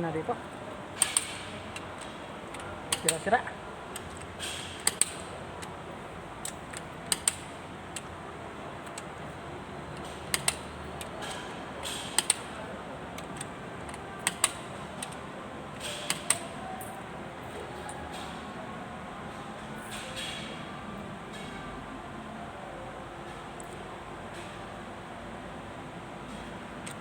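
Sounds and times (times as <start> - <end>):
workshop background noise: 0.0 - 27.0.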